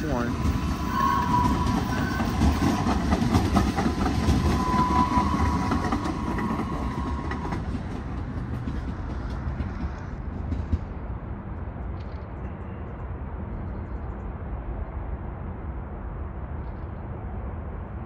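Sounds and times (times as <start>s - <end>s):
high wheel squeal: 0.0s - 3.1s, 4.2s - 7.7s
wheels clicking over rail joints: 0.0s - 11.2s
train rumbling past: 0.0s - 18.0s.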